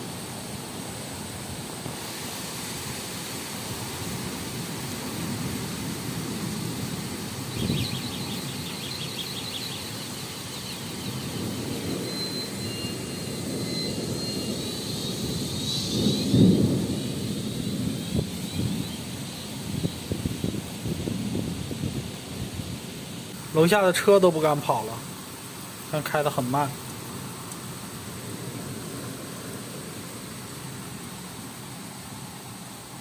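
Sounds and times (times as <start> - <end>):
strong wind gusts: 0.0 - 25.9
heavy rain: 0.0 - 33.0.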